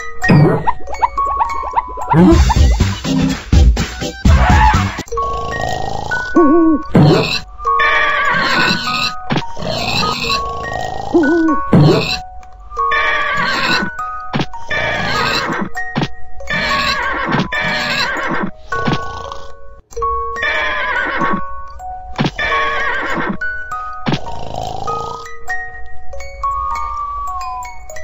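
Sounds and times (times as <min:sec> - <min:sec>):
music with bell-like notes: 0:00.0 - 0:03.2, 0:05.0 - 0:14.8, 0:15.6 - 0:16.7, 0:19.6 - 0:28.0
wavering whinny-like cries: 0:06.4 - 0:09.2, 0:12.8 - 0:14.1, 0:20.3 - 0:21.5, 0:22.4 - 0:23.5.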